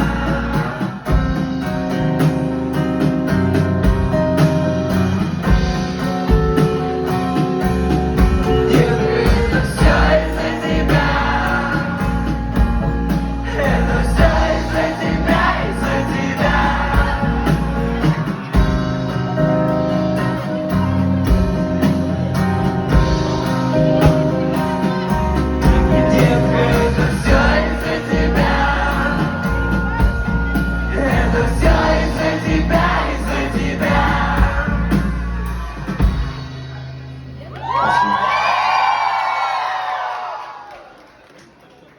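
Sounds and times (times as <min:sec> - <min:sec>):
acoustic band playing pop-rock: 0:00.0 - 0:37.5
person singing: 0:23.6 - 0:35.0.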